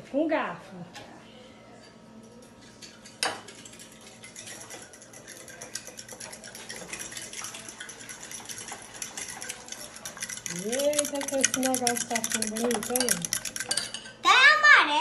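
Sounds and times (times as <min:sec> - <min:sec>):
fork beating batter in a bowl: 0:02.8 - 0:14.2.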